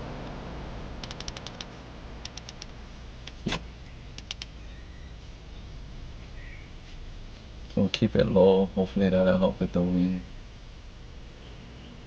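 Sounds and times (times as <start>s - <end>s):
low background hiss: 0.0s - 12.0s
sharp light clicks: 1.0s - 2.7s, 4.2s - 4.5s.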